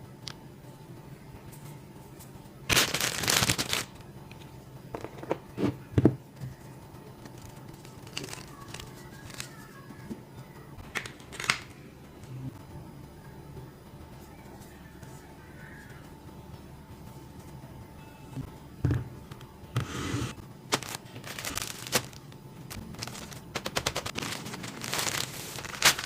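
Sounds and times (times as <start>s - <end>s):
plastic packaging crinkling: 2.7s - 4.0s, 7.3s - 9.6s, 20.7s - 26.0s.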